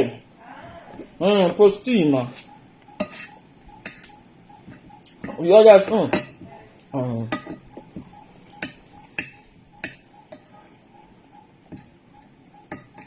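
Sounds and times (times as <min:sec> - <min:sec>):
cutlery clinking on a plate: 0:03.0 - 0:04.1, 0:05.2 - 0:06.5, 0:07.3 - 0:10.6, 0:12.7 - 0:13.0.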